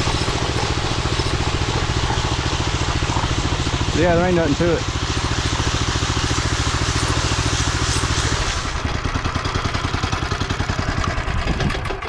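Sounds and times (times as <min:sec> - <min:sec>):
hiss: 0:00.0 - 0:09.0
power trowel engine running: 0:00.0 - 0:12.0.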